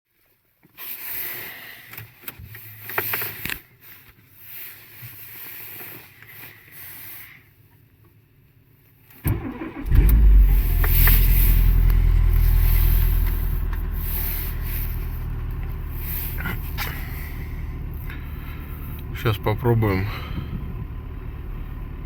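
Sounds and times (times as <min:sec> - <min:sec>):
car engine starting and running: 0:09.1 - 0:22.0
faint rustling: 0:10.4 - 0:22.0.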